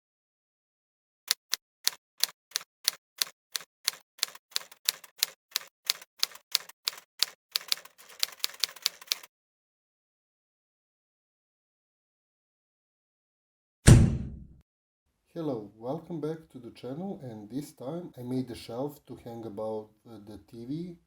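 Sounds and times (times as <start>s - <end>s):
typewriter key clacks: 1.3s - 9.3s.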